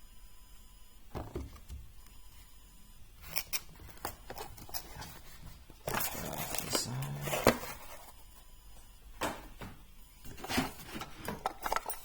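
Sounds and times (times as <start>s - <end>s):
tools and cases clicking: 10.5s - 12.0s.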